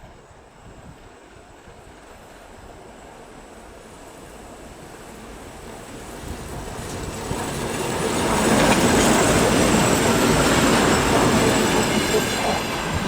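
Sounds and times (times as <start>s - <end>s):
diesel locomotive engine: 0.0s - 13.0s
train wheel and rail noise: 0.0s - 13.0s.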